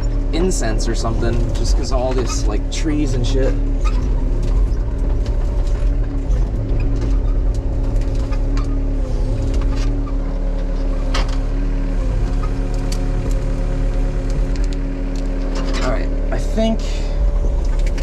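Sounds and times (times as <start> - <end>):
diesel engine running: 0.0 - 18.0
sharp cracks and knocks: 14.1 - 15.9.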